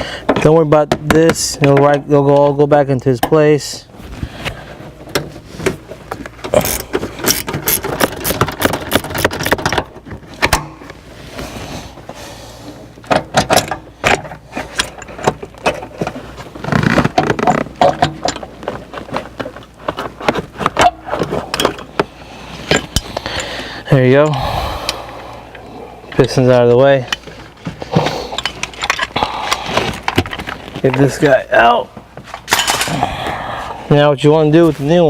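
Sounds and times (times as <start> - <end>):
plastic and metal clicks and rattles: 6.5 - 10.7.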